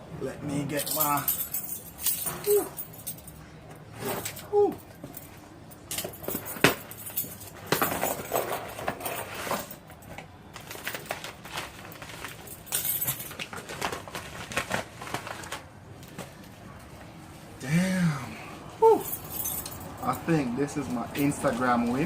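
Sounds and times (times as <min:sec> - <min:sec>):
cardboard and packing rustling: 0:06.0 - 0:17.0.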